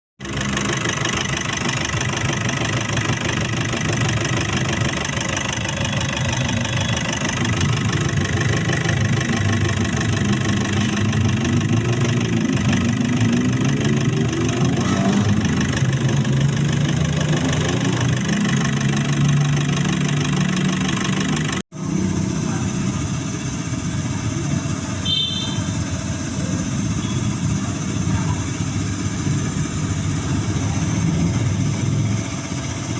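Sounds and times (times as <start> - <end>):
car engine idling: 0.2 - 32.9
short high beep: 25.0 - 25.9.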